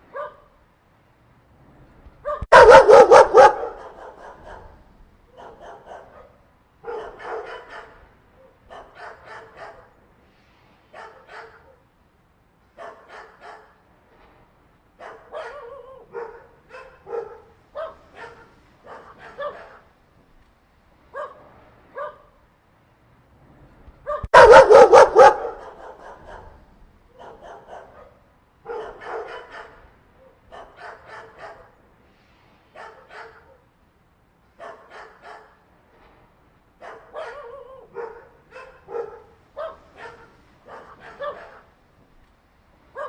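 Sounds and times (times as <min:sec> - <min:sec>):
dogs fighting and barking: 0:02.4 - 0:04.8, 0:24.1 - 0:26.6.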